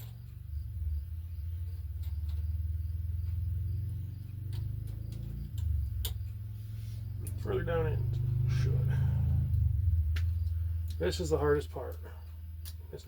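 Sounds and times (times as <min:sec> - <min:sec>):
steady low hum: 0:00.0 - 0:13.0
metal parts clicking and tapping: 0:04.2 - 0:06.4, 0:11.9 - 0:13.0.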